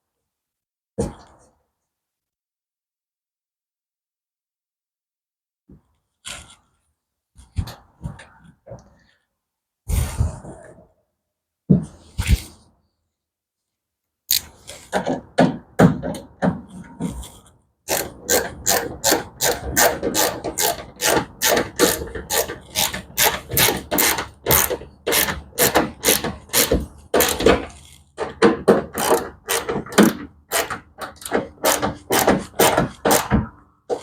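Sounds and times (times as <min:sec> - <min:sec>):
screwdriver clicking strokes: 0:17.9 - 0:28.0.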